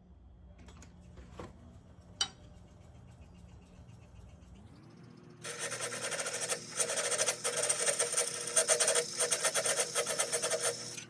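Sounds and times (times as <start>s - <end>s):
lathe motor hum: 1.8s - 11.0s
tool scraping wood on lathe: 5.5s - 11.0s.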